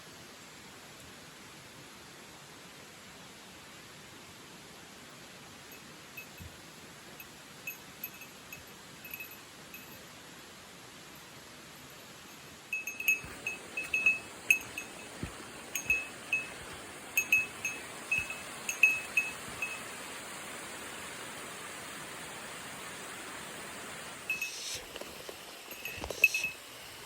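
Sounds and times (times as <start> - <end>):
steady hiss: 0.0 - 27.0
small metal bell jingling: 5.7 - 6.5, 7.2 - 10.0, 12.3 - 19.9, 25.6 - 26.6.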